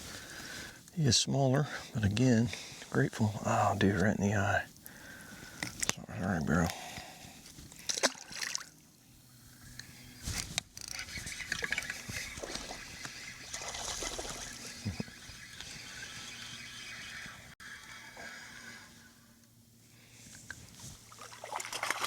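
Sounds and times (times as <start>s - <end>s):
water sloshing and trickling: 7.8s - 8.9s, 10.8s - 16.8s, 20.4s - 22.0s.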